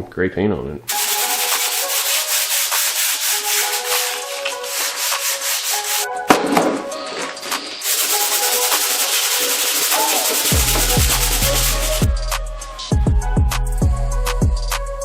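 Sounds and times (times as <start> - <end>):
scuff pad scrubbing metal: 0.9 - 6.1, 7.1 - 12.1.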